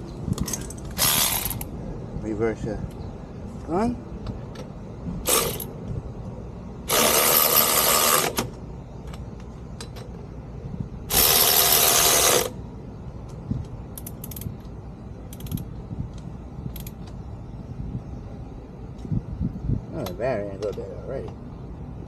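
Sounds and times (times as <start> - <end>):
cordless impact wrench running: 1.0 - 1.7, 5.3 - 5.7, 6.9 - 8.5, 11.1 - 12.5.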